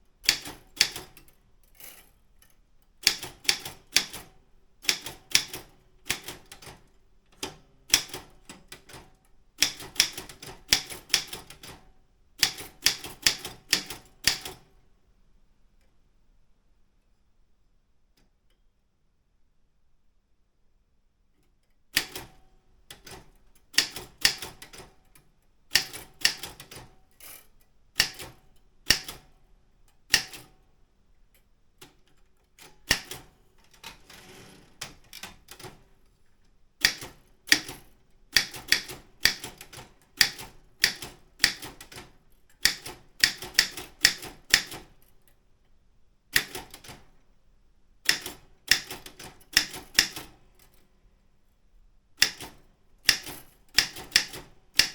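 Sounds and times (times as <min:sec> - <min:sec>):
typewriter key strikes: 0:07.4 - 0:11.8, 0:12.4 - 0:14.6, 0:25.7 - 0:27.4, 0:28.0 - 0:29.2, 0:32.8 - 0:35.8, 0:36.8 - 0:45.0, 0:46.4 - 0:47.0, 0:48.1 - 0:50.4, 0:52.2 - 0:54.9.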